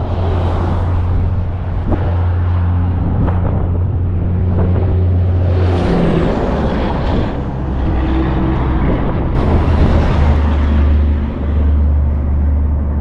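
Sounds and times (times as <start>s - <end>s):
traffic engine rumble: 0.0s - 13.0s.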